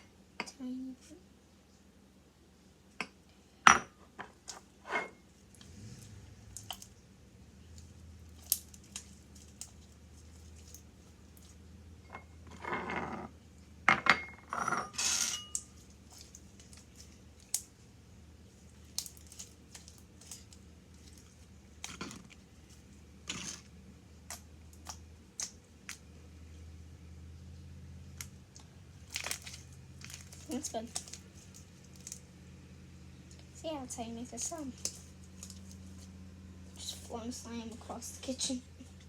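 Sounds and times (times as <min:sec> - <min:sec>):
fork clinking and scraping bowl: 0:14.2 - 0:15.7.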